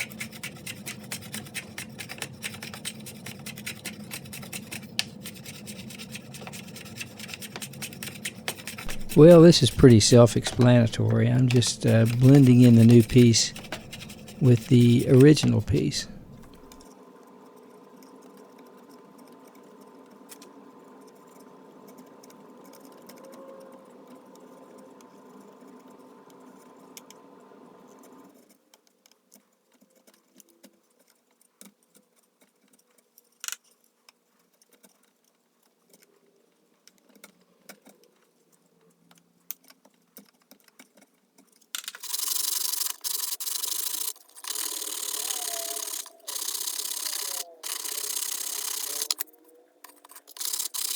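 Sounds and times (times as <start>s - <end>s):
scratchy sanding of wood: 0.0s - 16.8s, 42.0s - 49.2s
steady machine hum: 7.8s - 16.8s.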